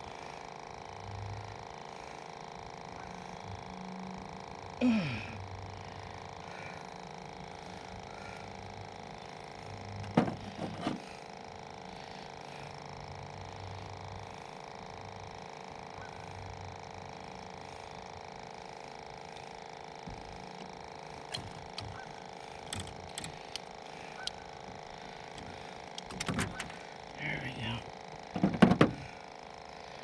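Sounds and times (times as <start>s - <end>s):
steady multi-tone hum: 0.0s - 30.0s
knocks and clicks: 21.3s - 22.0s, 22.7s - 24.4s, 25.4s - 26.8s.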